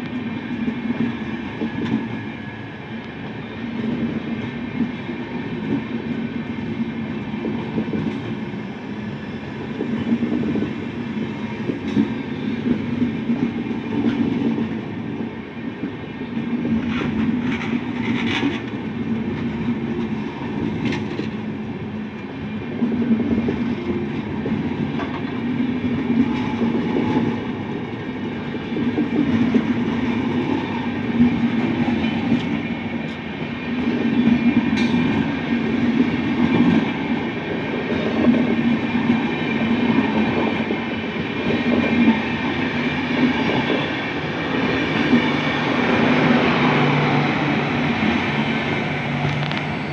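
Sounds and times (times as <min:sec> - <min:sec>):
train rumbling: 0:00.0 - 0:49.9
sharp high-pitched train noise: 0:29.3 - 0:49.9.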